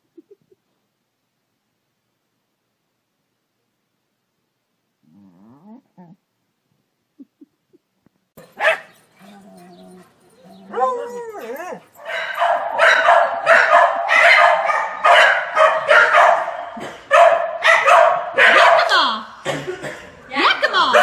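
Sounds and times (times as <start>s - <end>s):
dog barking rapidly: 8.4s - 9.0s, 11.9s - 19.1s, 20.7s - 21.0s
dog whining: 8.4s - 12.4s.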